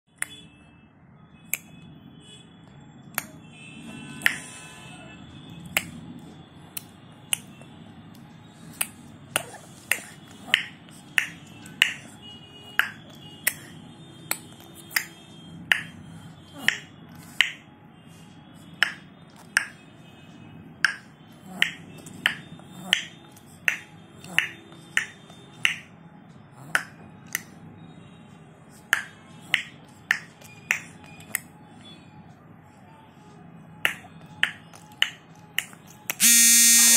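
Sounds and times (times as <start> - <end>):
baby clicking mouth: 6.8 - 7.6, 12.8 - 13.7, 14.3 - 15.1, 21.6 - 25.8, 26.6 - 27.5.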